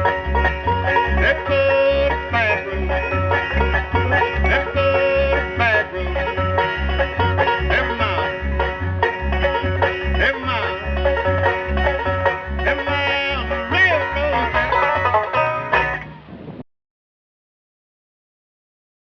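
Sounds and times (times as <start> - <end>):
steady bass beat: 0.0 - 16.1
banjo picking: 0.0 - 16.3
bluegrass band playing: 0.0 - 16.3.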